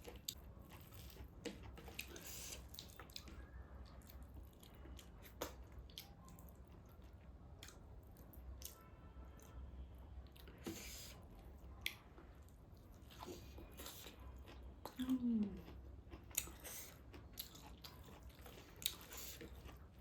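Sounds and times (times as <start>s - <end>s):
faint wet chewing: 0.0s - 8.8s, 10.2s - 20.0s.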